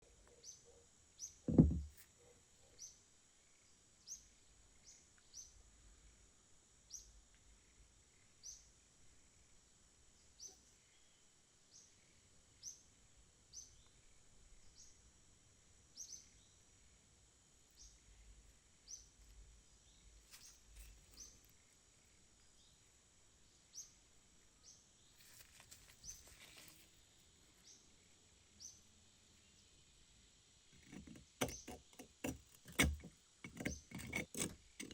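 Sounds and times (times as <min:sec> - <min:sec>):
brief rustle: 0:25.2 - 0:27.0.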